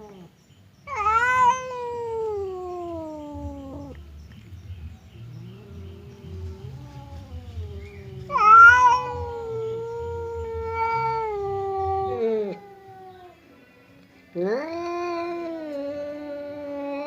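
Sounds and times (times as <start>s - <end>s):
cat growling: 0.9s - 4.0s, 4.8s - 13.3s, 14.4s - 17.0s
cat yowling: 0.9s - 4.0s, 5.6s - 13.4s, 14.4s - 17.0s.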